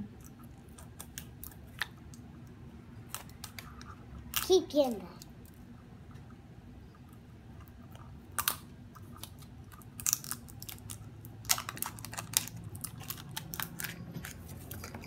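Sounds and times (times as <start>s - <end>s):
plastic packaging crinkling: 9.2s - 15.0s.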